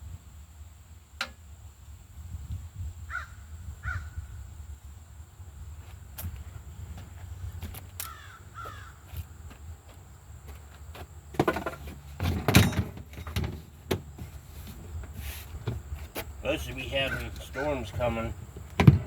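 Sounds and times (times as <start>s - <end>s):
bird cawing: 3.1s - 4.2s, 8.0s - 9.1s.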